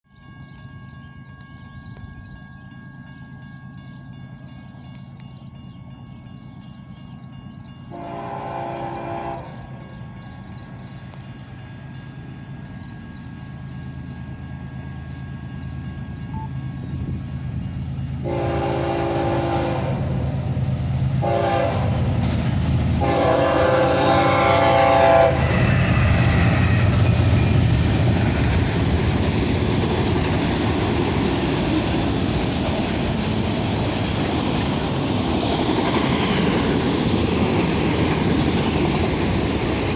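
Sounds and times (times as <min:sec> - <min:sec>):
train rolling past: 0:00.1 - 0:39.9
train horn blasts: 0:07.9 - 0:09.9, 0:18.2 - 0:20.6, 0:21.2 - 0:22.3, 0:23.0 - 0:26.0.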